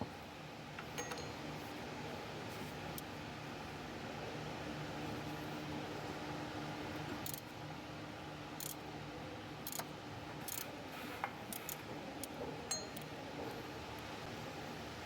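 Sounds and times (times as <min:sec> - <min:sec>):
metallic clicks of hand tools: 0:09.7 - 0:09.9.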